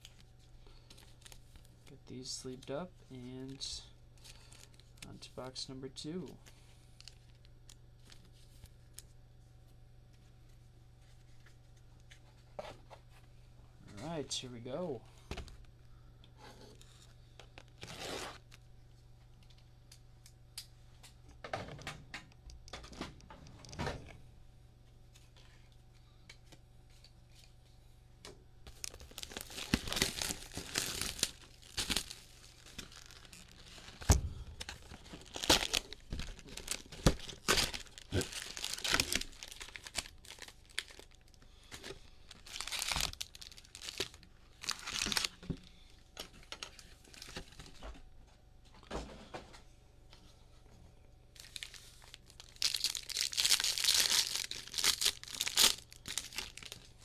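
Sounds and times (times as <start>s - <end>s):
foil wrappers tearing and crinkling: 6.4s - 7.4s, 17.6s - 18.6s, 28.7s - 45.5s, 46.2s - 47.7s, 51.4s - 57.0s.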